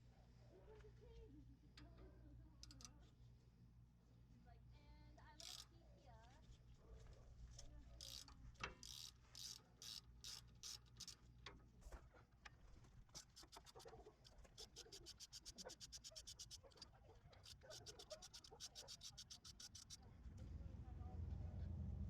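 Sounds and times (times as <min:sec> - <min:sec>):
ratchet wrench clicking: 0:05.4 - 0:05.7, 0:08.0 - 0:11.2, 0:13.2 - 0:16.8, 0:17.4 - 0:20.0.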